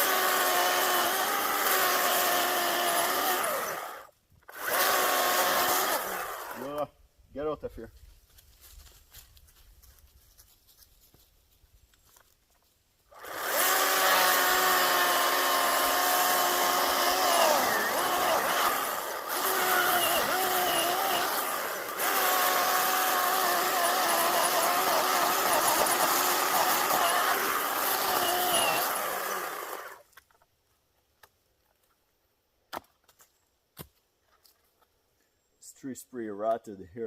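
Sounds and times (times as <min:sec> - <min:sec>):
battery chainsaw cutting wood: 0:00.0 - 0:06.9, 0:13.1 - 0:30.2.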